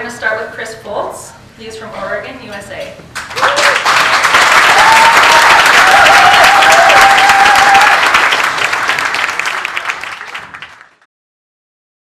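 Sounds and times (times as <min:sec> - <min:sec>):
audience applauding: 0:03.2 - 0:11.1.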